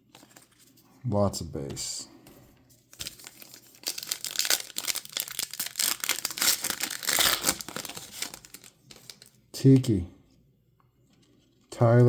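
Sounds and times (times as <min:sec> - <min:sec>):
plastic wrapper tearing and crinkling: 0:02.9 - 0:09.4.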